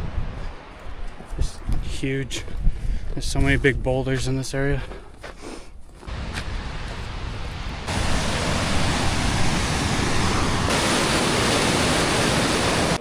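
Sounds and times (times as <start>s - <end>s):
loud rushing noise with rumble: 6.1s - 13.0s.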